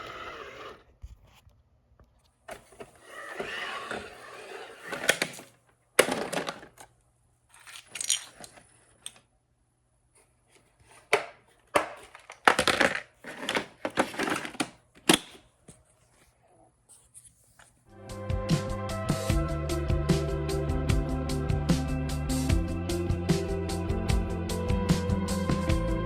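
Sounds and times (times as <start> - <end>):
plastic bricks clattering: 6.0 - 6.9, 7.5 - 9.3, 11.1 - 15.4.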